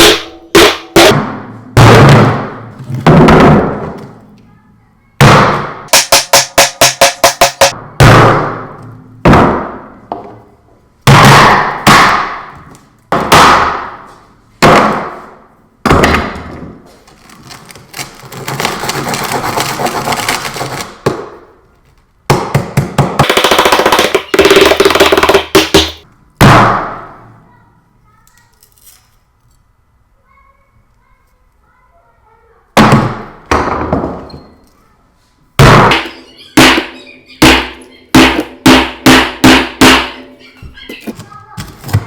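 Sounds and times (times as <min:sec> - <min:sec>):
hammer striking phone: 0:05.2 - 0:07.7
crunching and rattling: 0:17.0 - 0:20.8.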